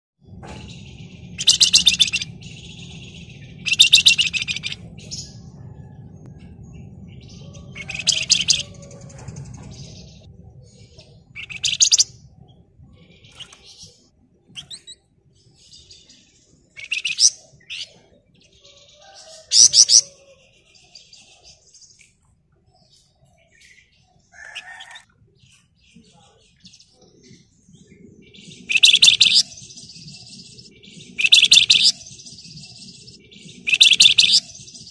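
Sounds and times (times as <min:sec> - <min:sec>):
low steady hum: 0:00.2 - 0:18.6
songbird chattering trills: 0:00.6 - 0:22.2, 0:22.9 - 0:34.9.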